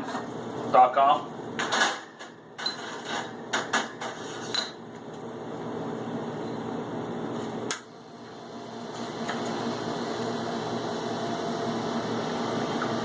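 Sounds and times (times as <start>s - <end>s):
espresso machine running: 7.9s - 13.0s.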